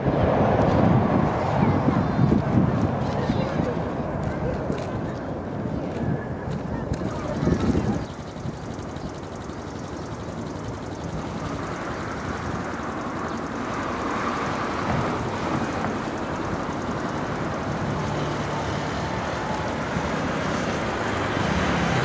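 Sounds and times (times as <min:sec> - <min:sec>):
wind buffeting microphone: 0:00.0 - 0:22.0
airliner engine noise: 0:06.8 - 0:22.0.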